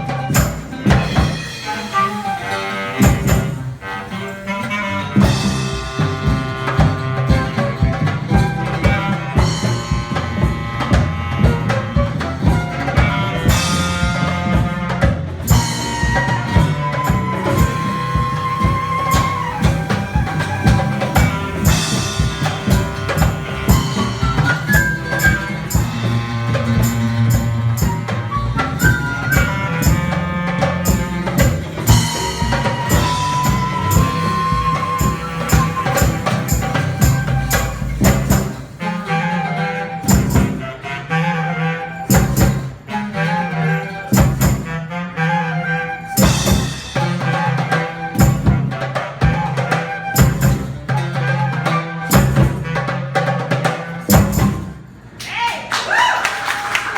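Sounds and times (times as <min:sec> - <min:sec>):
live band playing: 0:00.0 - 0:55.2
hard accented drum hits: 0:05.2 - 0:38.8.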